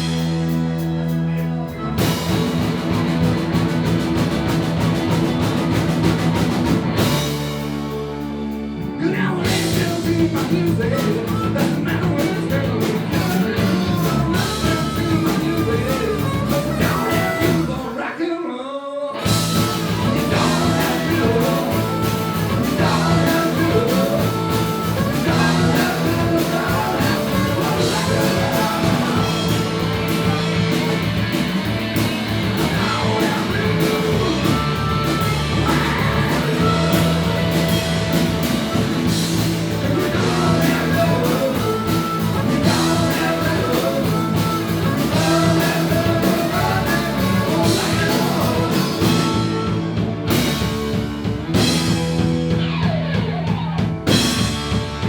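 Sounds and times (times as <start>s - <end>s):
rock band playing live: 0.0s - 18.0s, 19.2s - 55.0s
person singing: 8.8s - 50.6s.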